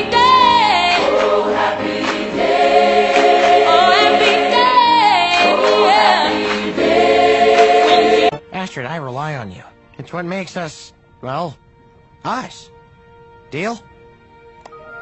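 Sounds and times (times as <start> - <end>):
choir singing long held notes: 0.0 - 8.4.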